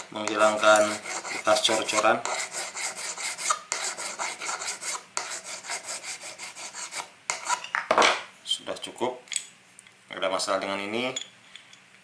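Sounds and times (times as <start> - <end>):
rasping strokes on metal: 0.0 - 7.6.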